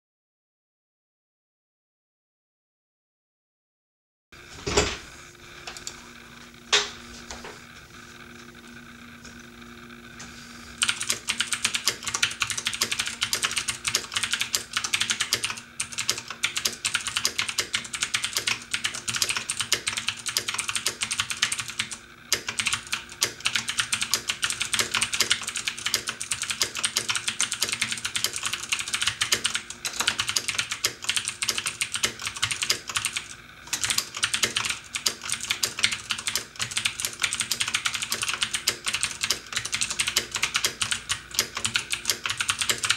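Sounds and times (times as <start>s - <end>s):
air conditioner hum: 4.4s - 42.9s
mechanical keyboard typing: 10.8s - 42.9s.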